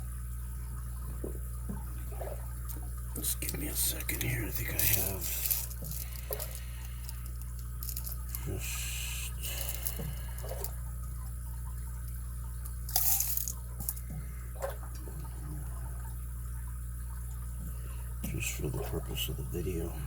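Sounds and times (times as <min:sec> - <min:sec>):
steady low hum: 0:00.0 - 0:20.0
scraping rustles: 0:04.6 - 0:08.4.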